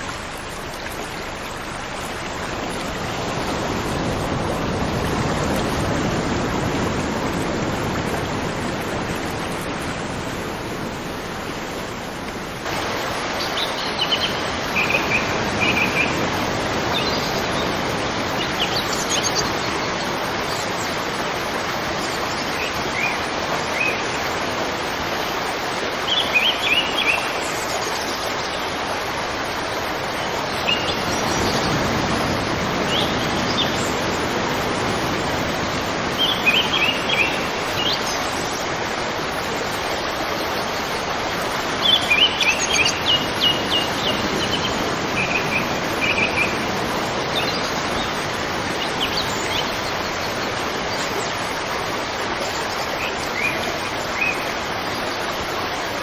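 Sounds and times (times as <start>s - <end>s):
flowing river water: 0.0s - 56.0s
small birds chirping: 41.7s - 51.4s.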